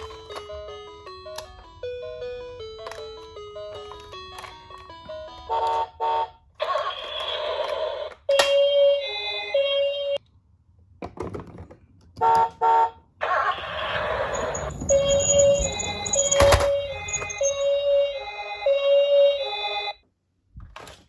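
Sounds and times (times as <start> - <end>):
toy electronic siren: 5.5 - 10.2, 13.2 - 19.9
clicks: 13.6 - 17.7.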